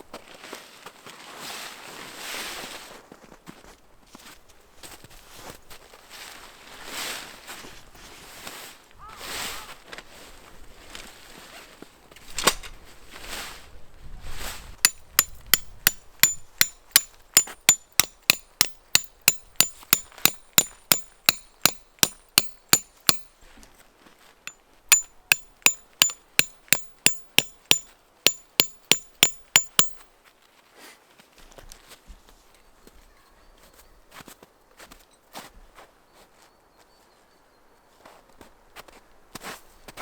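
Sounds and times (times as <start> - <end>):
hammer striking metal tent pegs: 14.8 - 23.3, 24.9 - 30.1.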